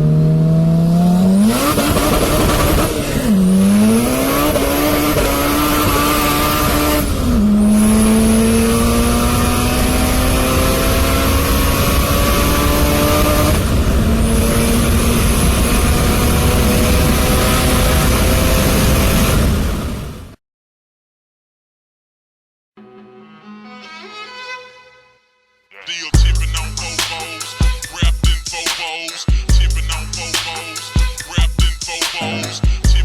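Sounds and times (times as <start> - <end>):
car engine accelerating: 0.0 - 20.2.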